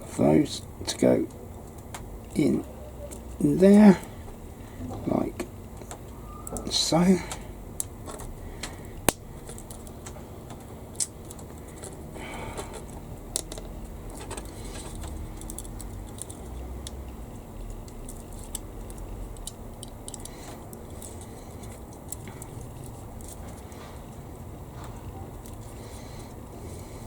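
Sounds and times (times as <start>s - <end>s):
plastic parts clicking and tapping: 7.3s - 23.7s.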